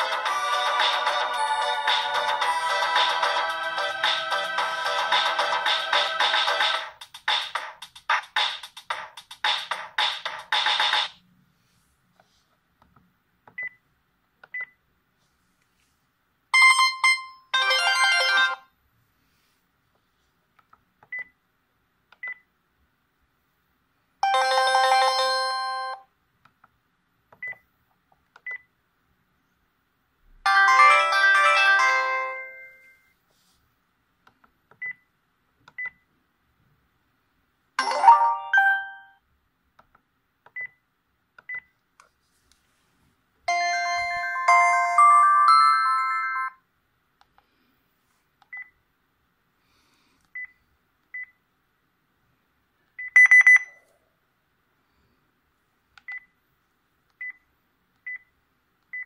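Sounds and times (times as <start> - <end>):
phone ringtone melodies: 0.0 - 6.8, 16.6 - 18.7, 24.2 - 26.0, 30.5 - 33.1, 37.8 - 39.2, 43.5 - 46.6.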